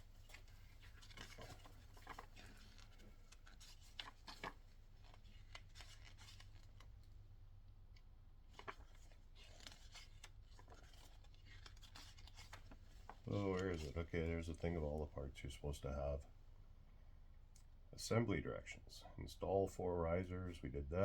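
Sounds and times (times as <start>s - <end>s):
paper rustling: 0.0s - 7.1s, 8.5s - 15.0s
low steady hum: 10.5s - 21.0s.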